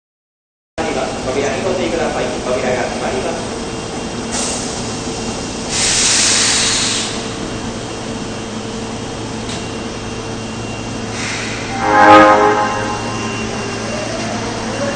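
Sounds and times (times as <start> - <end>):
train low hum: 0.8 - 14.9
compressed-air hiss: 5.7 - 7.3.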